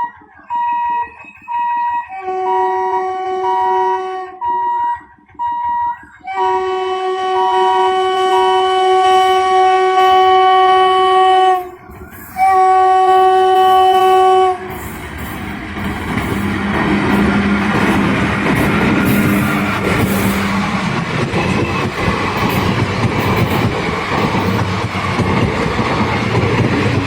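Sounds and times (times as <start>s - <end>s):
train passing: 0.0s - 27.0s
locomotive air horn blasts: 1.6s - 11.8s, 12.4s - 14.8s.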